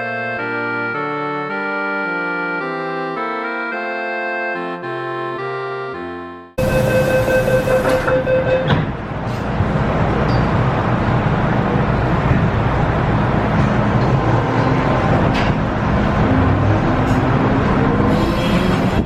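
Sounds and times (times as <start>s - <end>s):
electric train steady tone: 6.6s - 15.5s
train running noise: 6.6s - 19.0s.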